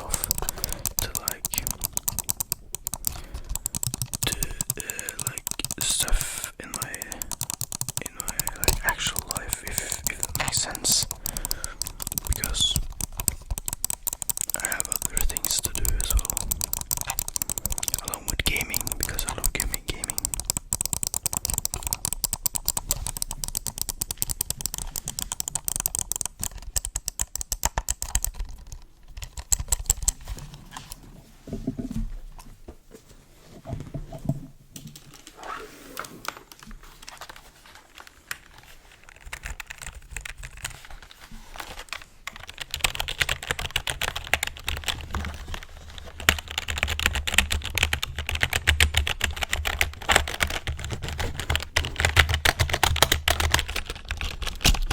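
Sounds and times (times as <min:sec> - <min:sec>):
mouse buttons clicking: 0:00.0 - 0:30.2
computer keyboard keys clicking: 0:00.0 - 0:31.0, 0:36.0 - 0:54.9.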